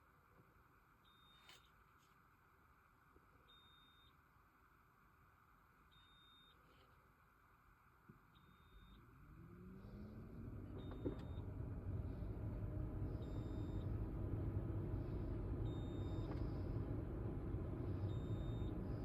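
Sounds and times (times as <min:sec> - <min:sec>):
car hum and road noise: 0:09.0 - 0:19.0.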